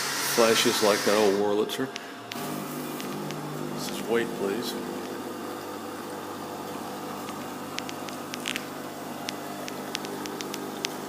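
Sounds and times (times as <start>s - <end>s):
coffee machine humming: 0.0s - 11.0s
faint irregular clicks: 7.2s - 11.0s.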